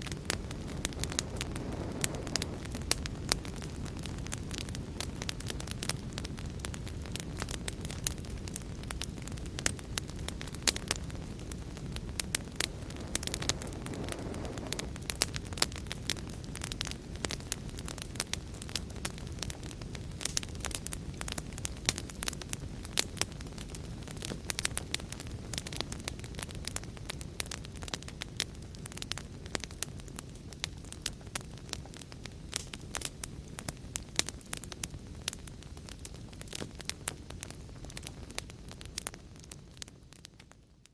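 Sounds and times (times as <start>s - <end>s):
fire roaring: 0.0s - 40.8s
fire pops and snaps: 0.0s - 40.9s
low steady rumble: 7.8s - 17.3s.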